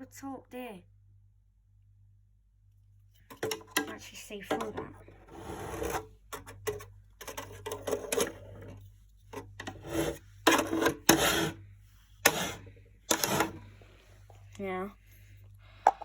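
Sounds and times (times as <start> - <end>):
hard plastic parts scraping: 3.3 - 11.6, 12.2 - 13.8.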